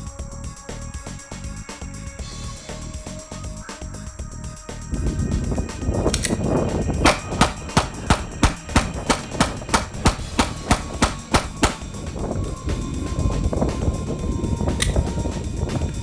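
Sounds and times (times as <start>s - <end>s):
pistol shots: 7.1s - 12.0s.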